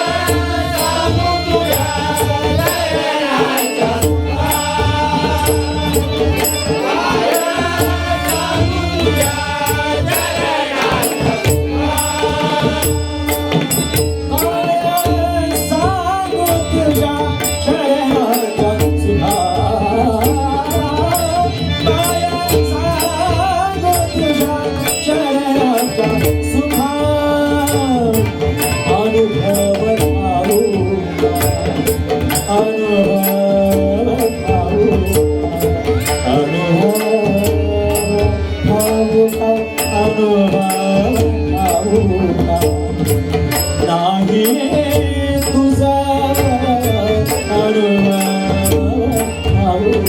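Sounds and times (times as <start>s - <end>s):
hand cymbal strikes: 0.0s - 50.0s
tabla: 0.0s - 50.0s.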